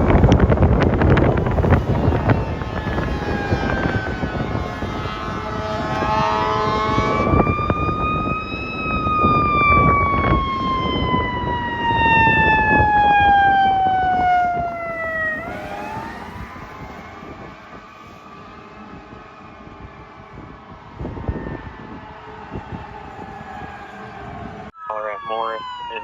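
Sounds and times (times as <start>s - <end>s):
fire engine siren: 0.0s - 26.0s
air horn blast: 1.2s - 7.5s.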